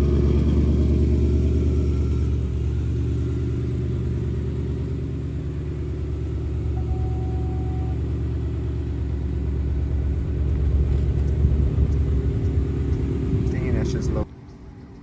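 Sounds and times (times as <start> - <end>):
car engine idling: 0.0 - 14.3.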